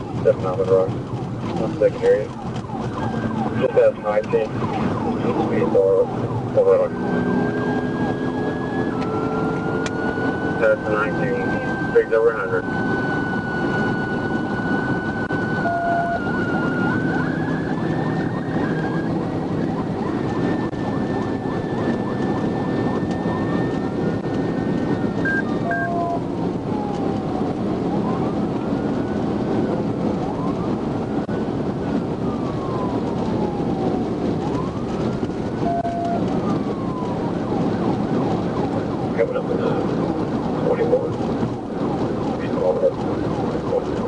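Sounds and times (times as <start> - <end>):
police siren: 0.0 - 44.0
road and wind noise: 0.0 - 44.0
short beeps: 25.3 - 26.2.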